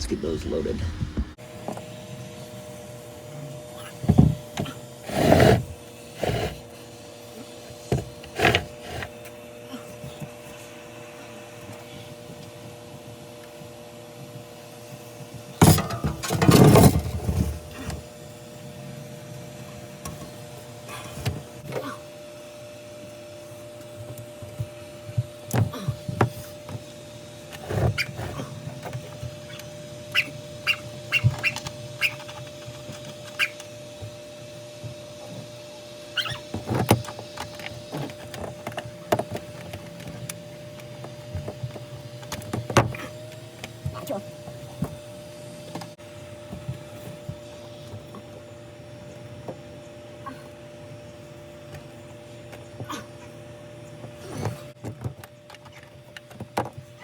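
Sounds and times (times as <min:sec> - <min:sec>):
steady hum: 0:00.0 - 0:16.4.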